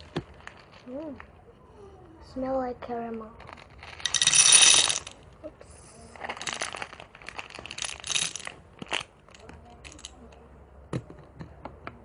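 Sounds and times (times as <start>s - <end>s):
hard candies clattering on plastic: 0.0s - 1.4s, 3.0s - 5.2s, 6.0s - 11.6s.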